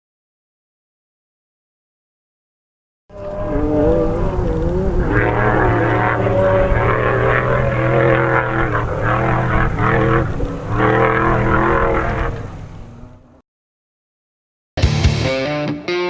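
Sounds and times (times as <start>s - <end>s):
off-road race vehicle engine: 3.1s - 13.4s.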